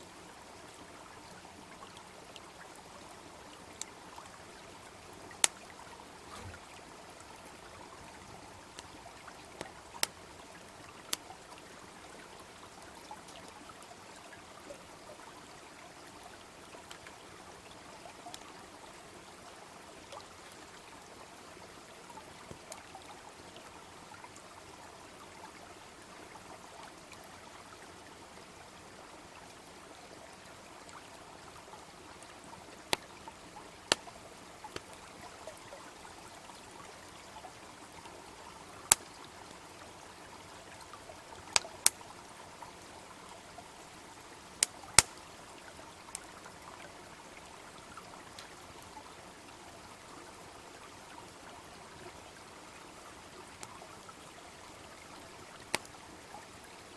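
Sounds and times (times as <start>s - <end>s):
babbling brook: 0.0s - 56.9s
wood fire crackling: 9.6s - 10.2s, 33.8s - 34.9s, 44.6s - 45.2s.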